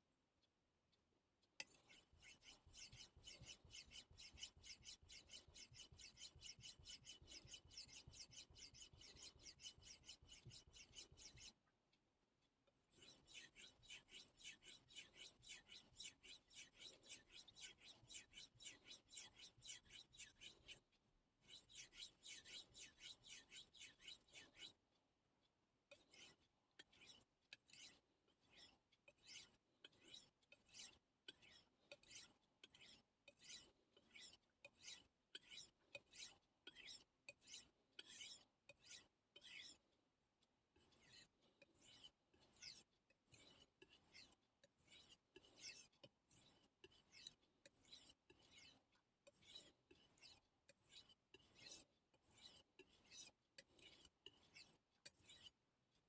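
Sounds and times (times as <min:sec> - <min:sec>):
knife rasping on whetstone: 0:01.6 - 0:11.6.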